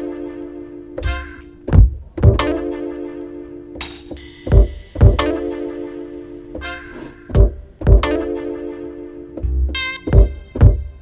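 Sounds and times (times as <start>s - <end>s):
deep drum hits: 1.7s - 2.5s, 4.4s - 5.4s, 7.3s - 8.1s, 10.1s - 11.0s.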